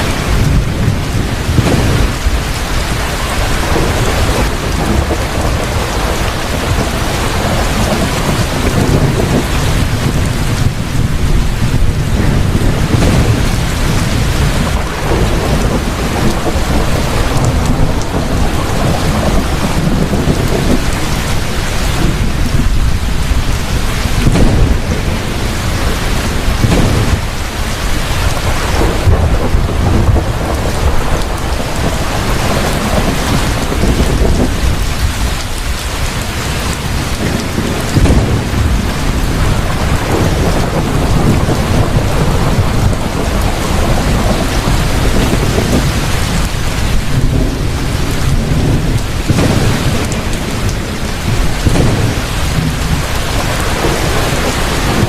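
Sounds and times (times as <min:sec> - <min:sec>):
heavy rain falling: 0:00.0 - 0:55.0
thunder rumbling: 0:00.0 - 0:55.0.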